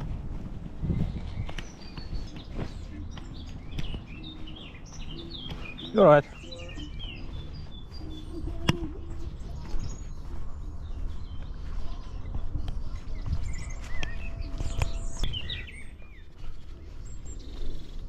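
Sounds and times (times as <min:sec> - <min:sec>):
steady low rumble: 0:00.0 - 0:17.6
small birds chirping: 0:00.0 - 0:18.0.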